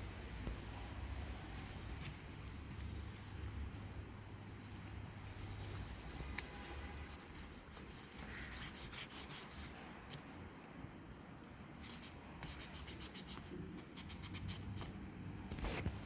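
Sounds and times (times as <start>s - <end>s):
cloth wiping a hard surface: 4.7s - 9.8s.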